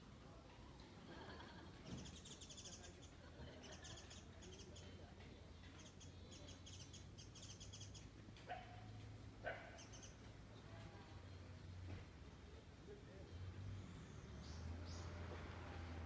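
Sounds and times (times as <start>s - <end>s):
small bird trilling: 5.8s - 8.1s.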